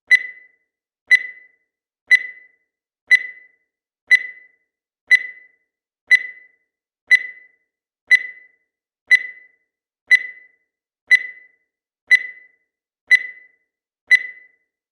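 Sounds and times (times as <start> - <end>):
digital timer beeping: 0.1 - 14.9.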